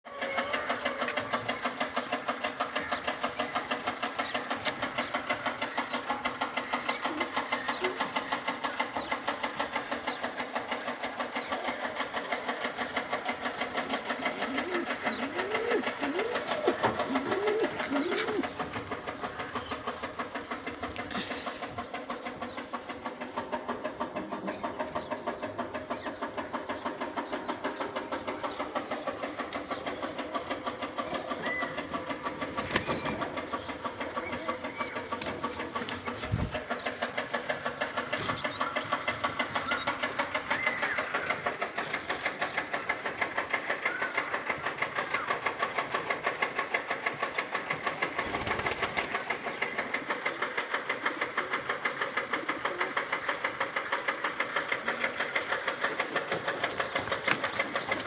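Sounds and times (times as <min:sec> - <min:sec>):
machine clattering rhythmically: 0:00.1 - 0:58.0
pigeon cooing: 0:14.2 - 0:19.8.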